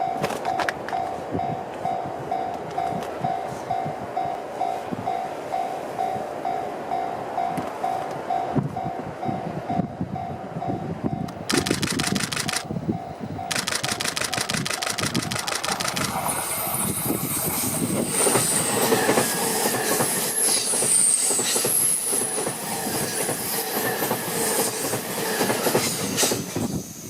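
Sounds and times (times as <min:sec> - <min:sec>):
crossing bell ringing: 0:00.0 - 0:11.4
train wheels clacking on rails: 0:11.1 - 0:26.9
high wheel squeal: 0:16.3 - 0:25.4.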